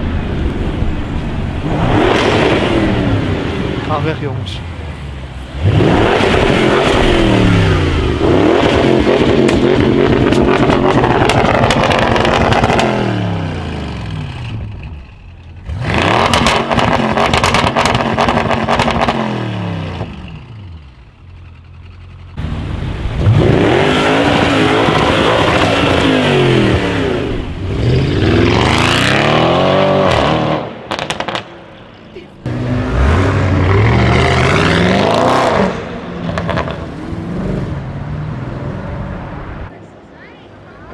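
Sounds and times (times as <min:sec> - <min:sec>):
car engine revving: 0:00.0 - 0:39.8
exhaust crackles: 0:05.4 - 0:37.0.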